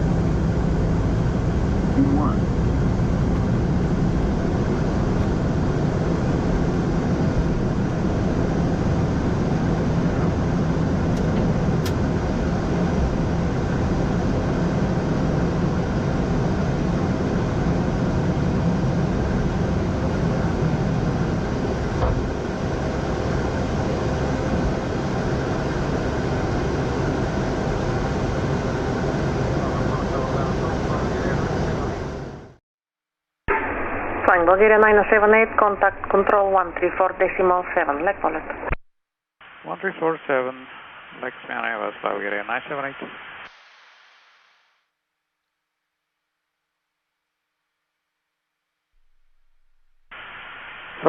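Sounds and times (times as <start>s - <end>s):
cockpit airflow and engine noise: 0.0s - 32.6s.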